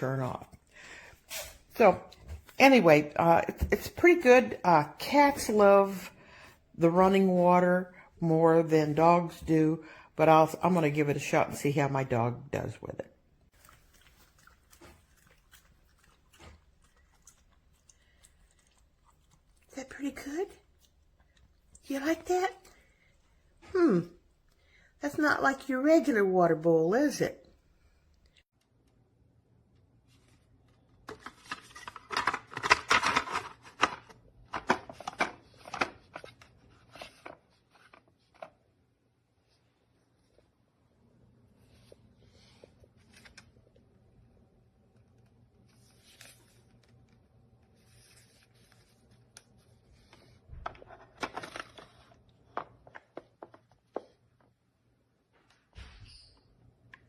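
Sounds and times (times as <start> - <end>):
dog drinking wet sounds: 13.5 - 19.8.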